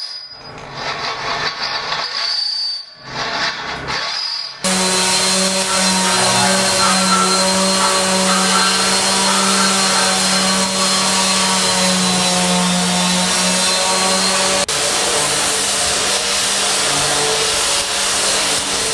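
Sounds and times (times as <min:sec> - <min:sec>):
electric power tool motor running: 0:04.7 - 0:14.6.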